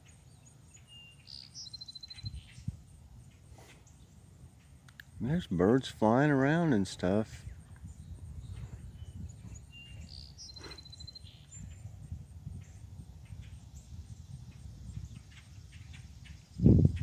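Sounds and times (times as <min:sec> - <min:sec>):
bird trill: 0:00.0 - 0:04.7, 0:07.5 - 0:11.9
songbirds chirping: 0:00.0 - 0:17.0
steady low rumble: 0:02.3 - 0:10.1.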